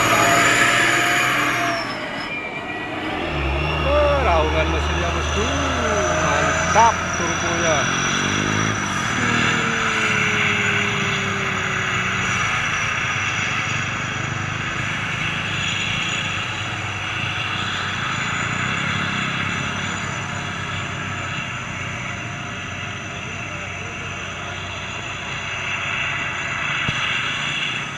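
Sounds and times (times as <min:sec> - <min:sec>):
turbo whistle sliding down: 0:00.0 - 0:12.8
diesel truck engine under load: 0:00.0 - 0:27.9.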